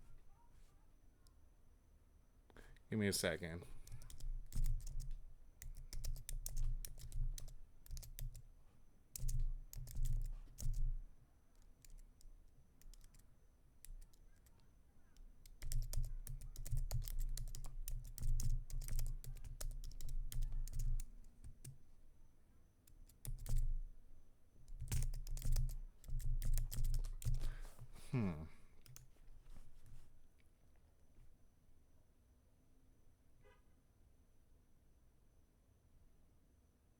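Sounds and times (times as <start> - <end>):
keyboard typing: 3.8 - 8.5, 9.2 - 21.8, 22.9 - 23.9, 24.7 - 27.9, 28.8 - 29.1.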